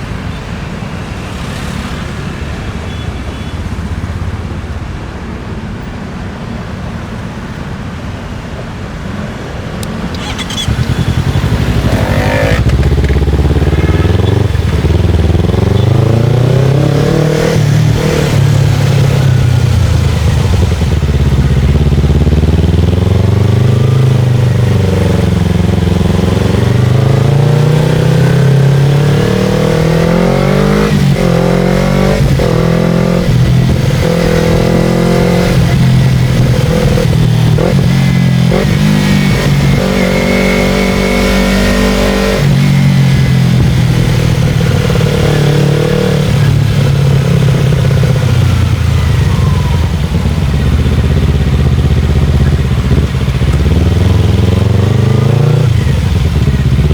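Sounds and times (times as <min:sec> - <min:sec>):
motorcycle engine with gear changes: 0:09.6 - 0:56.9.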